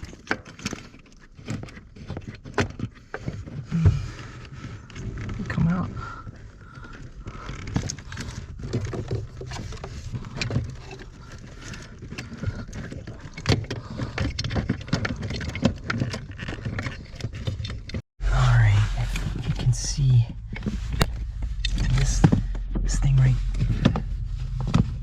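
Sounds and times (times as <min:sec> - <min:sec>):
metallic clicks and rattles: 0:07.4 - 0:18.0.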